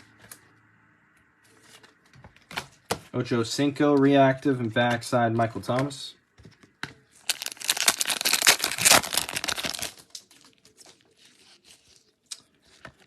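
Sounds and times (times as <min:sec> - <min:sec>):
wrapper crinkling and tearing: 0:07.2 - 0:12.8.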